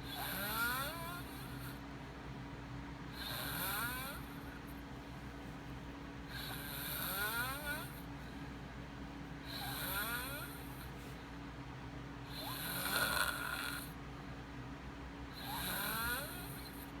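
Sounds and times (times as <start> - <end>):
boy snoring: 0.1 - 1.8, 3.2 - 4.4, 6.3 - 8.0, 9.5 - 10.7, 12.3 - 13.9, 15.4 - 16.8.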